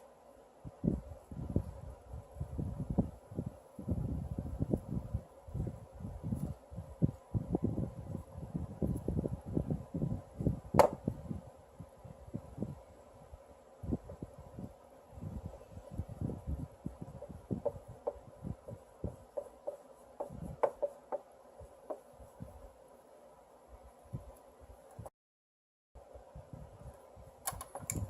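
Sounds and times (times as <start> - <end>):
faint steady hum: 0.0 - 25.1, 26.0 - 28.0
soft handling knocks and rubs: 16.2 - 22.8.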